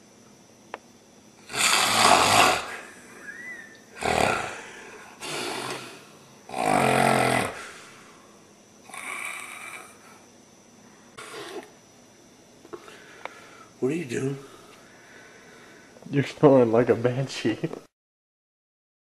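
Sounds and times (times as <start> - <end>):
person snoring heavily: 1.4 - 8.1, 8.8 - 10.2, 11.2 - 11.7.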